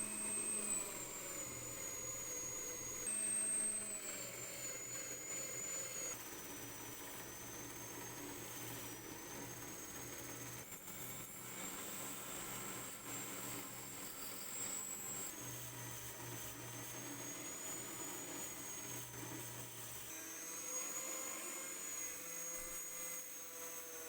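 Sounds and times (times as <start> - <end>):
power tool motor whining: 0.0 - 6.1.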